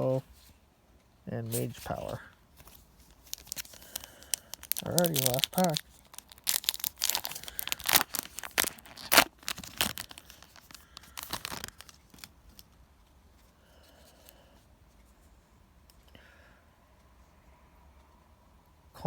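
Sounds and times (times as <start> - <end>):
foil wrapper tearing and crinkling: 3.1 - 12.6.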